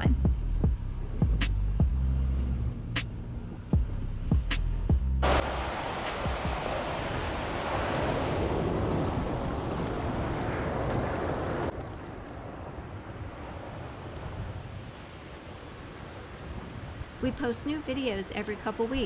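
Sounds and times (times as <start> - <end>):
surf washing on beach: 5.2 - 19.0
wind buffeting microphone: 16.6 - 19.0.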